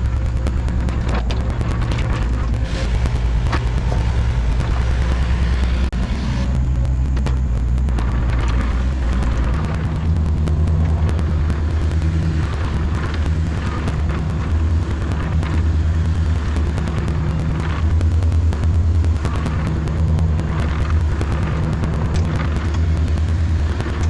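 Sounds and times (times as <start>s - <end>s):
excavator diesel engine digging: 0.0s - 17.9s.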